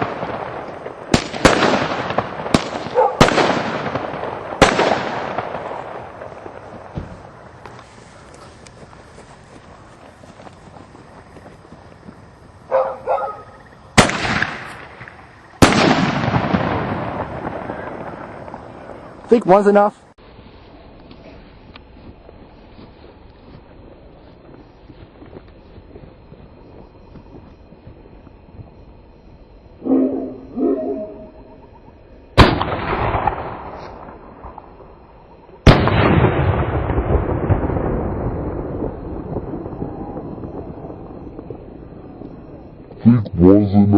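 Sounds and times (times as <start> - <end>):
firework bangs with echo: 0.0 - 7.8, 14.0 - 19.2, 32.4 - 34.7, 35.6 - 41.8
firework bursts: 0.0 - 12.7, 13.4 - 22.0.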